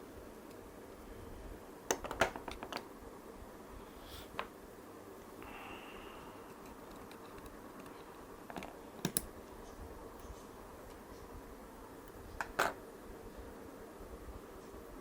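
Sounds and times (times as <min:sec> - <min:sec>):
faint steady hum: 0:00.0 - 0:15.0
sharp clicks and taps: 0:09.0 - 0:09.3.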